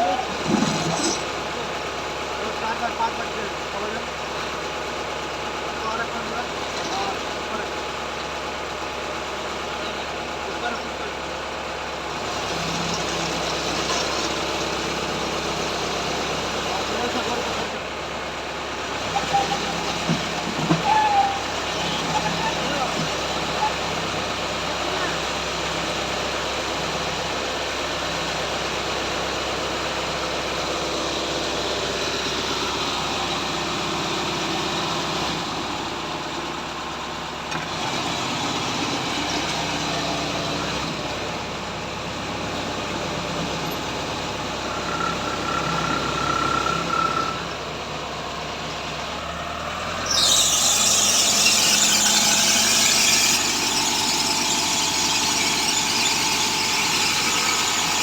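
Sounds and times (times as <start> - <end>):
squealing: 0.0 - 1.4, 19.0 - 25.3, 43.5 - 47.6, 50.0 - 58.0
drilling machine running: 0.0 - 58.0
loud hiss: 50.0 - 58.0.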